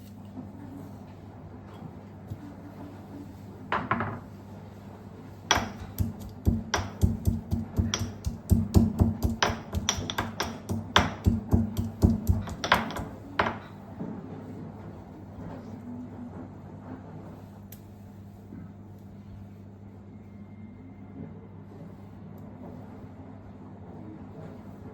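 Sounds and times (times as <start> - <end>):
steady low hum: 4.4 - 24.9
sharp kitchen knocks: 5.5 - 13.7.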